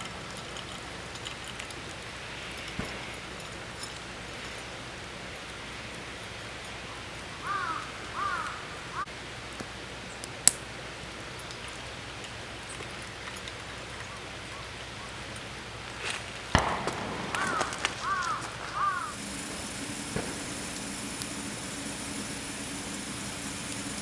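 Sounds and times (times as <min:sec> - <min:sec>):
crow cawing: 0:07.4 - 0:09.1, 0:16.6 - 0:19.2
loud sharp knock: 0:16.6 - 0:19.0.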